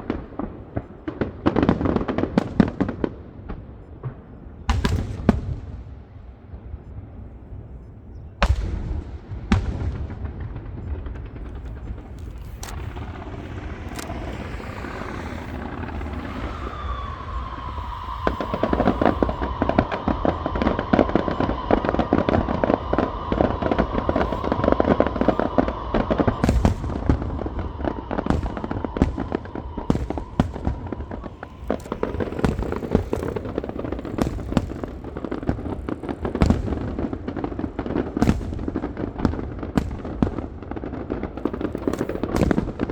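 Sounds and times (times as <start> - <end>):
fireworks crackling: 0.0 - 7.7, 8.4 - 42.9
firework shells bursting: 9.6 - 42.9
high whistle: 14.8 - 26.5.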